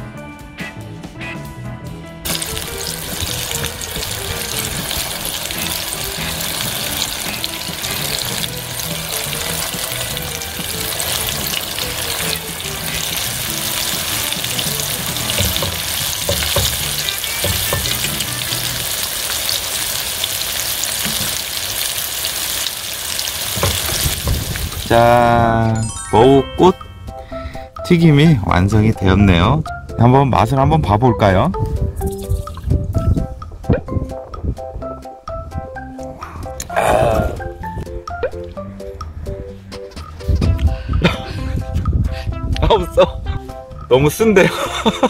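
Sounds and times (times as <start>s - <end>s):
deep-frying sizzle and crackle: 2.2s - 25.4s.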